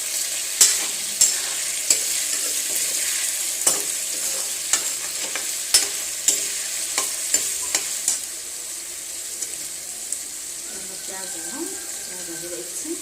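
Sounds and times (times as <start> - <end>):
food sizzling in a pan: 0.0 - 13.0
spatula scraping a pan: 0.3 - 8.3.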